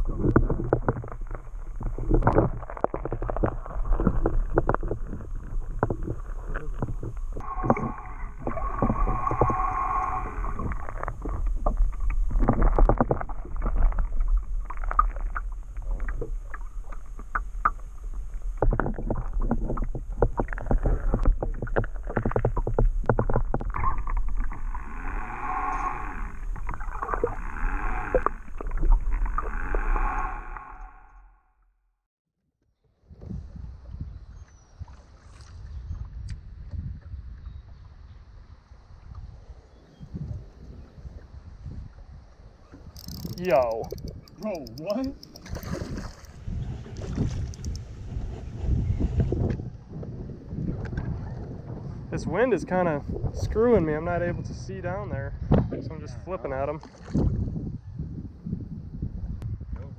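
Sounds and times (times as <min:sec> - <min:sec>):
steady low rumble: 0:03.3 - 0:22.1, 0:22.7 - 0:31.4
water slapping against boat: 0:43.1 - 0:48.4.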